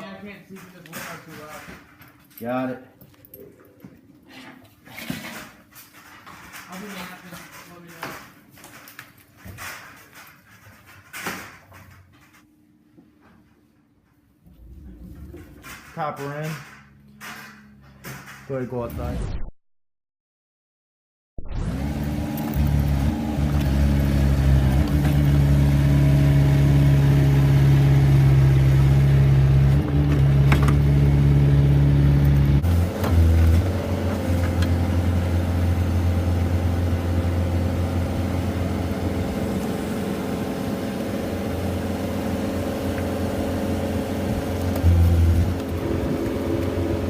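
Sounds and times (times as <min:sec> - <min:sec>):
machine engine running under load: 0:21.6 - 0:47.0.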